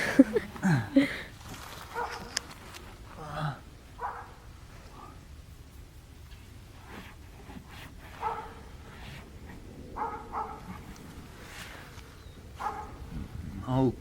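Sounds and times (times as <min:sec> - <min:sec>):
dog yipping: 0:12.6 - 0:12.9.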